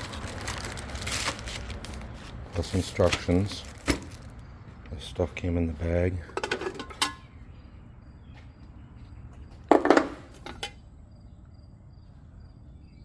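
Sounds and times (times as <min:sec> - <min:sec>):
bag rustling and parts clattering: 0:00.0 - 0:04.4.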